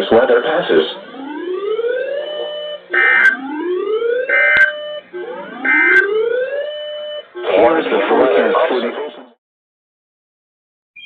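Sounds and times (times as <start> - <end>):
two-tone digital squawks: 2.3 - 3.6, 4.2 - 6.2.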